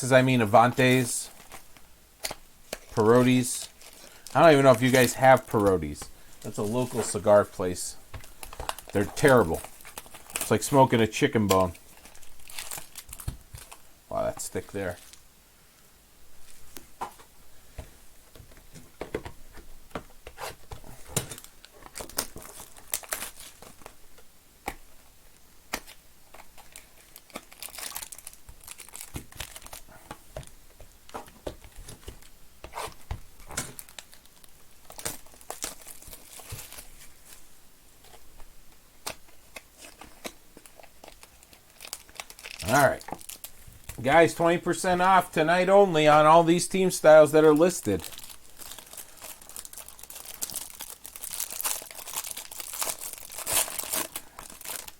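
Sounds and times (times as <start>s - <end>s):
plastic wrapping tearing and crinkling: 0.5s - 13.9s, 20.2s - 24.0s, 25.7s - 30.0s, 31.1s - 37.4s, 39.0s - 54.9s.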